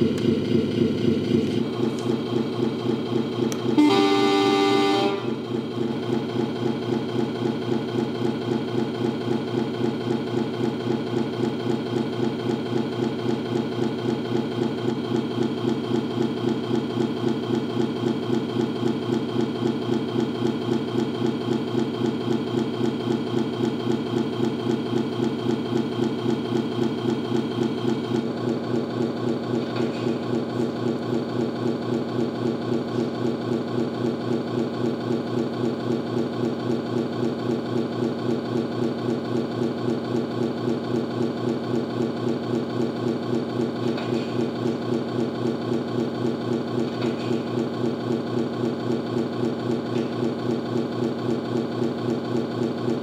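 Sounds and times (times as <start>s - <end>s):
diesel truck engine from small speaker: 0.0s - 31.4s.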